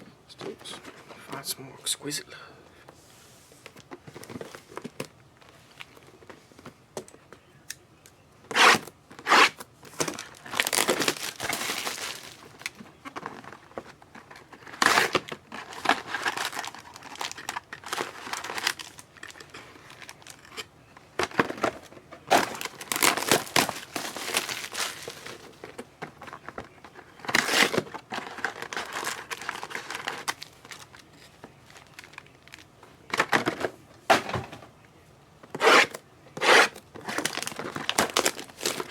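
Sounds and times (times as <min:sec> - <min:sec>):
wrappers torn and crinkled: 0:08.5 - 0:13.4, 0:14.3 - 0:20.6, 0:22.3 - 0:25.6, 0:27.2 - 0:32.7, 0:37.0 - 0:38.9.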